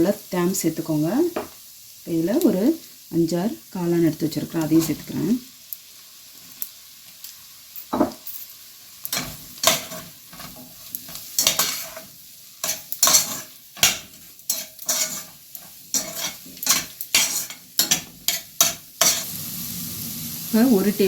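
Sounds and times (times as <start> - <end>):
faint sizzle: 0.0 - 21.0
utensil scraping a frying pan: 9.1 - 19.5.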